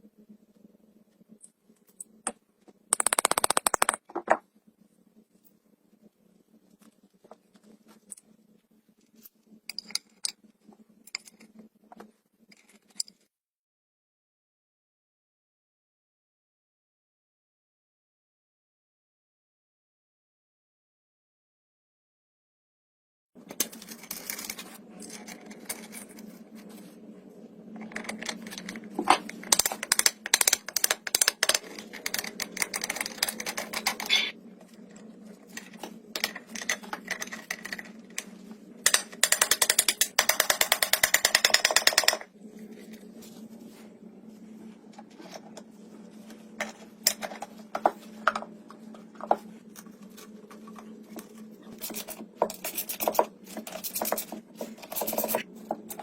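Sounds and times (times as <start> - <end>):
taps clicks and scrapes: 1.3 - 4.4, 27.7 - 42.3, 44.9 - 56.0
low steady hum: 23.4 - 56.0
fast regular scraping strokes: 51.8 - 55.5.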